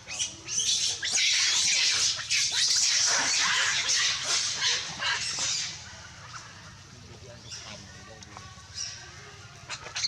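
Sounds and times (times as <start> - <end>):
monkeys screaming: 0.0 - 6.6, 9.6 - 10.0.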